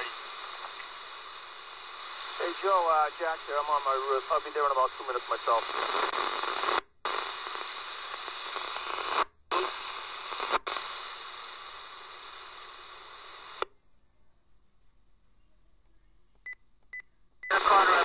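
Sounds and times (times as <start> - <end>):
radio scanner static hiss: 0.0 - 13.7, 17.4 - 18.0.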